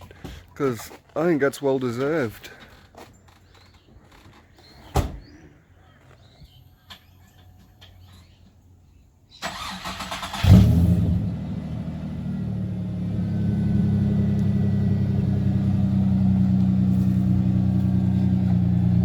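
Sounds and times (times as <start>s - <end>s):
car engine starting and idling: 9.4s - 19.0s.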